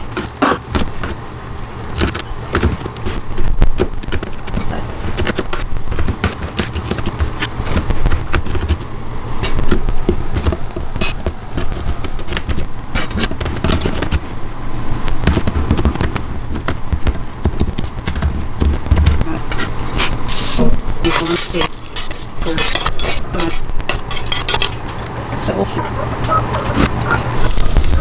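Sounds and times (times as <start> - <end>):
garlic sizzling in hot oil: 27.4 - 28.0.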